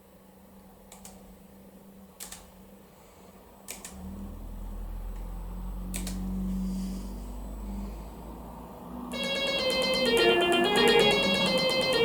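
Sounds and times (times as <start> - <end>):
sharp clicks: 2.2 - 2.5, 3.7 - 4.0.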